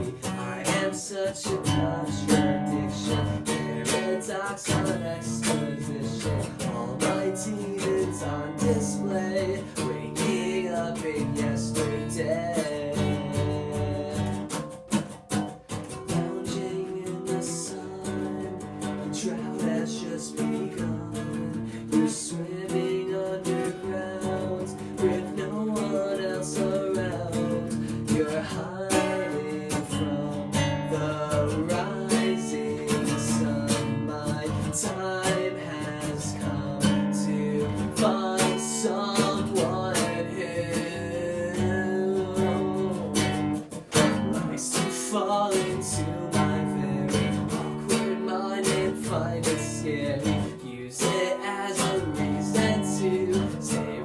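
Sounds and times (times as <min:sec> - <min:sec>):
acoustic guitar strumming: 0:00.0 - 0:54.0.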